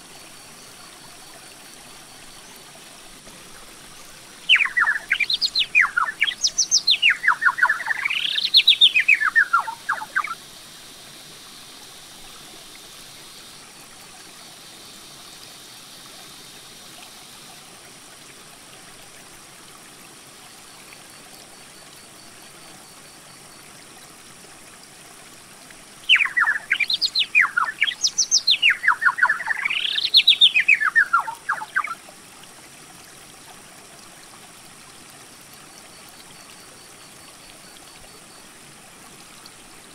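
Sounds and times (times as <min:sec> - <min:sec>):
faint hiss: 0:00.0 - 0:39.9
songbird singing: 0:04.5 - 0:10.4, 0:26.0 - 0:32.0.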